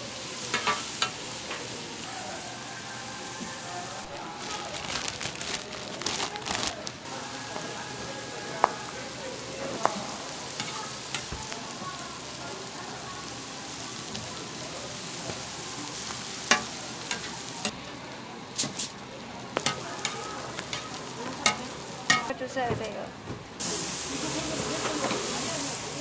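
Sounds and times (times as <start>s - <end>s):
food sizzling frying: 0.0s - 26.0s.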